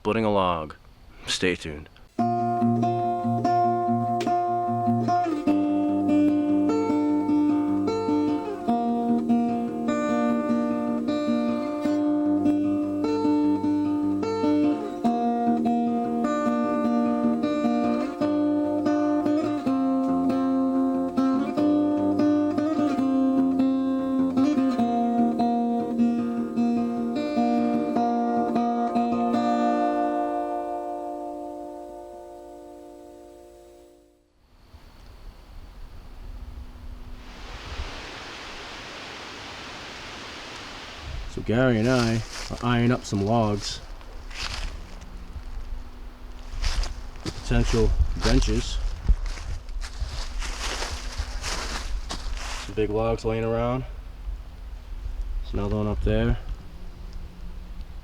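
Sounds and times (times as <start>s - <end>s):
acoustic guitar music: 2.2s - 34.4s, 40.5s - 54.1s.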